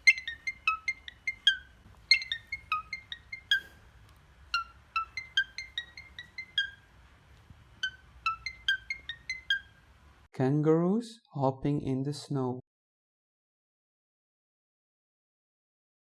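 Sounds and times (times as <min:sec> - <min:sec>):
ringtone melody of plucked notes: 0:00.0 - 0:03.9, 0:04.5 - 0:07.0, 0:07.8 - 0:09.8.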